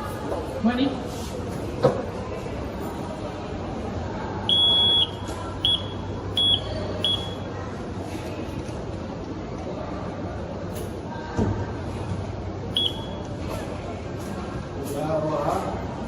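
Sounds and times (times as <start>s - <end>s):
morse code buzzer beeps: 4.5s - 7.4s, 12.8s - 13.2s.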